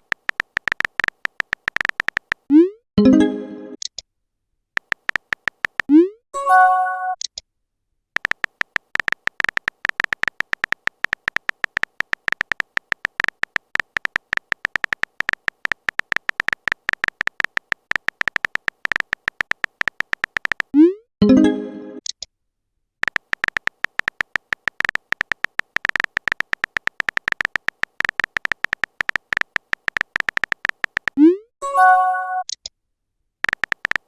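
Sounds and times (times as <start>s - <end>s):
rapid high electronic beeping: 8.2s - 20.7s, 23.0s - 31.1s.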